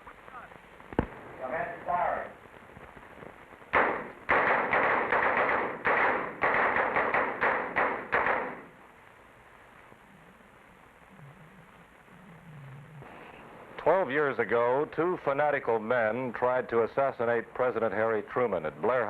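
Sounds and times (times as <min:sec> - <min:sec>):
pistol shots with echo: 0:03.7 - 0:08.7.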